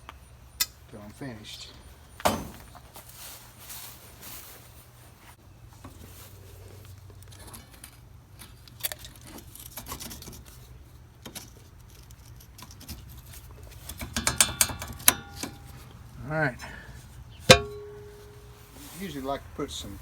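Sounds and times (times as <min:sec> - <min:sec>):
metallic clicks of tools handled: 0:11.2 - 0:16.0
low steady hum: 0:12.0 - 0:20.0.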